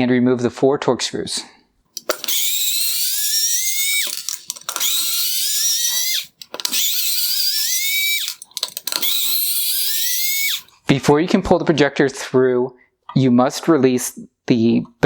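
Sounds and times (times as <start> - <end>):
power driver motor whine: 2.0 - 10.7.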